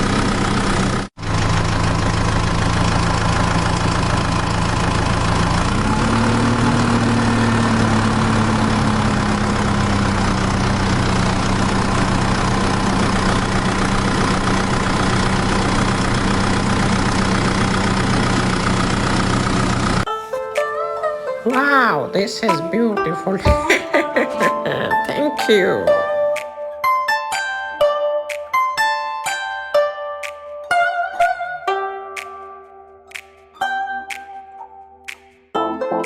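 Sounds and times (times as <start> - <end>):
small tractor motor running: 0.0 - 20.1.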